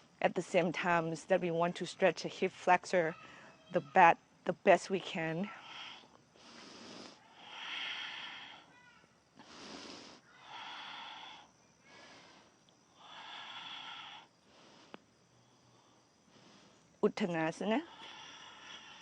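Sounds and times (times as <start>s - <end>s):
woman breathing deeply: 5.5s - 8.7s, 9.4s - 17.0s, 17.8s - 19.0s.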